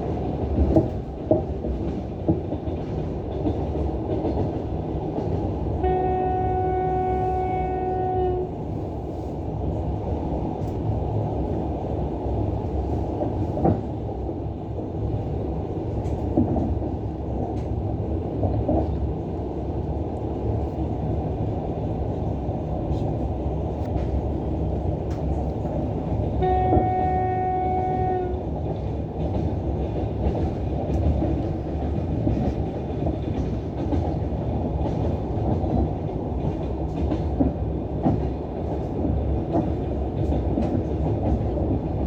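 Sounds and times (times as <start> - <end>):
train rumbling: 0.0 - 42.0
train horn: 5.8 - 8.8, 26.4 - 28.5.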